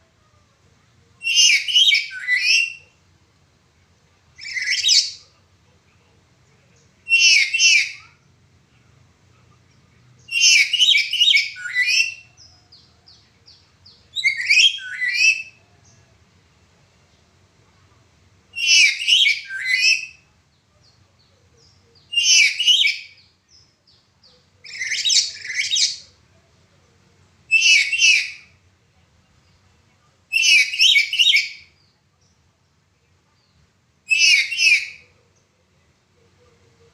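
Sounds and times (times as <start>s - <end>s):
parrot squawking: 1.2s - 2.8s, 4.4s - 5.2s, 7.1s - 8.1s, 10.3s - 12.3s, 18.6s - 20.2s, 22.1s - 23.1s, 24.6s - 26.0s, 27.5s - 28.5s, 34.1s - 35.0s.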